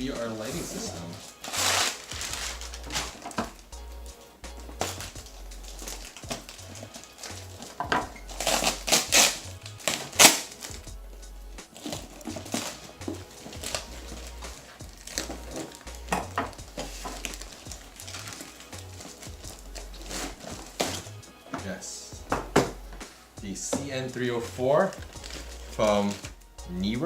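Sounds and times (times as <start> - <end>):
background music: 0.0 - 27.0
cardboard box rustling and crinkling: 0.2 - 3.6, 11.7 - 15.8, 16.4 - 21.1, 23.7 - 26.4.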